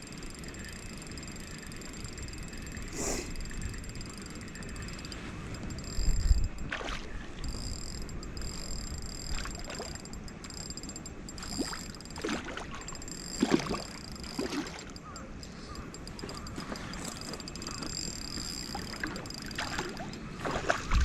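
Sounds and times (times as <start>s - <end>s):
faint high whine: 0.0s - 21.0s
water splashing: 6.7s - 7.5s, 11.4s - 14.9s, 18.7s - 21.0s.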